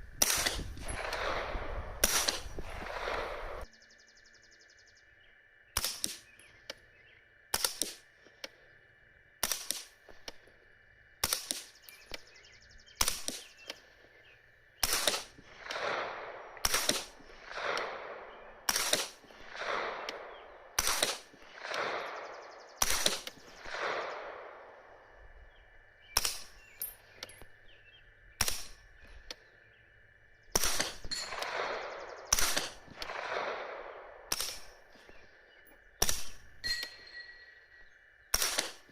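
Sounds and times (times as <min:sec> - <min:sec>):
suppressed gunshots: 0:00.1 - 0:03.7, 0:05.8 - 0:06.4, 0:07.5 - 0:08.1, 0:09.4 - 0:10.4, 0:11.2 - 0:12.3, 0:13.0 - 0:13.8, 0:14.8 - 0:26.9, 0:28.4 - 0:29.0, 0:30.5 - 0:35.2, 0:36.0 - 0:37.0, 0:38.3 - 0:38.9
drawn-out gunshot echo: 0:00.2 - 0:03.7, 0:05.8 - 0:06.4, 0:13.0 - 0:13.7, 0:14.8 - 0:26.8, 0:28.4 - 0:29.0, 0:30.5 - 0:35.2, 0:36.0 - 0:37.4, 0:38.3 - 0:38.9.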